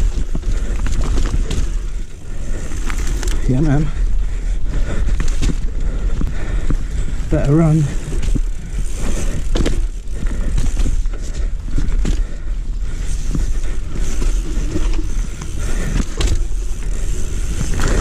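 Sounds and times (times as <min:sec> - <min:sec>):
bike knocks and rattles: 0:00.0 - 0:04.0, 0:04.8 - 0:18.0
bike tyres rumbling on dirt: 0:00.0 - 0:18.0.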